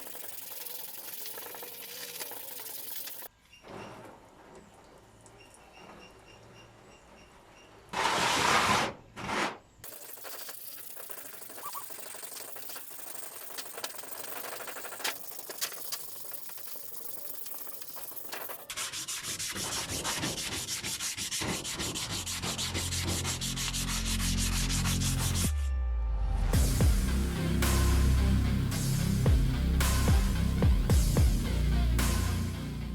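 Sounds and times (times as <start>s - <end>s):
sanding scraping hiss: 9.9s - 25.5s
music with low bass: 25.2s - 32.9s.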